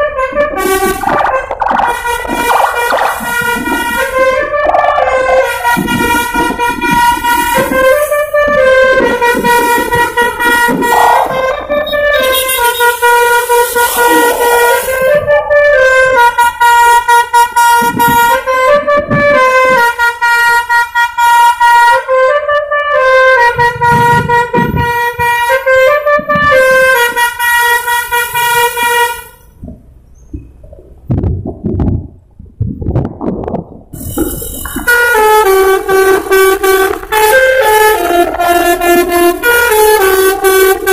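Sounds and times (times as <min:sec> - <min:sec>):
low rumbles: 0:00.0 - 0:16.2, 0:29.4 - 0:40.9
musical air horn playing tune: 0:00.0 - 0:29.4, 0:34.0 - 0:40.9.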